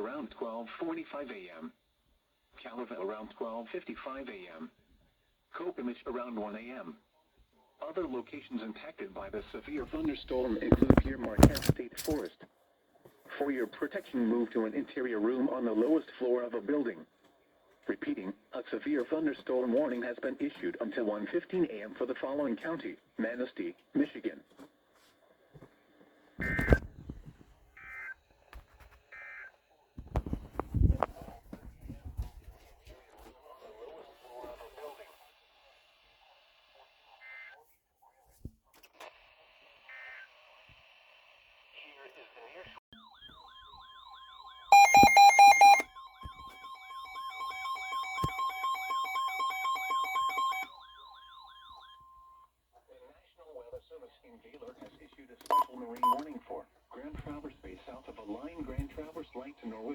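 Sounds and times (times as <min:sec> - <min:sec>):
radio noise crackles and thumps: 0:08.0 - 0:12.2, 0:26.4 - 0:27.5, 0:30.0 - 0:32.5, 0:54.6 - 0:59.9
steady high beep: 0:44.7 - 0:50.7.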